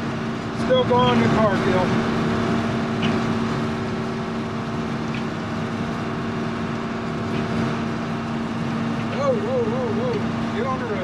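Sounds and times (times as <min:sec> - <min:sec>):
combine harvester engine droning: 0:00.0 - 0:11.0.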